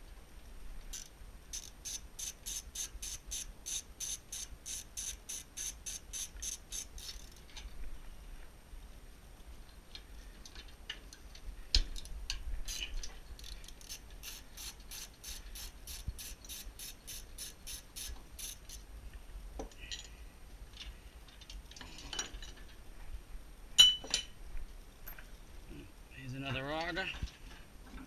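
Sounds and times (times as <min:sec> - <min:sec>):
hand tools working metal parts: 0:00.9 - 0:07.5, 0:12.7 - 0:18.8.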